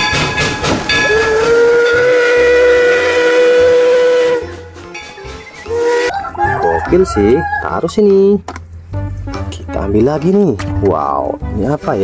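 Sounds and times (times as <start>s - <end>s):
steam locomotive whistle: 0.0s - 6.2s.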